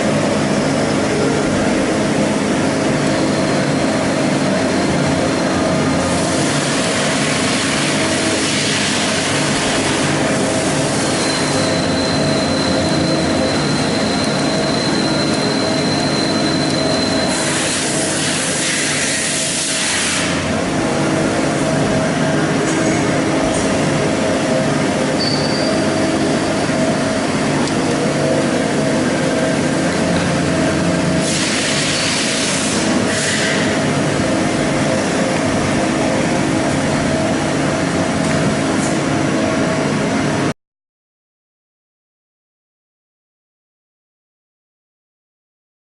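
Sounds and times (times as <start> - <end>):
lathe machine hum: 0.0 - 40.5
thin high whine: 10.1 - 39.8.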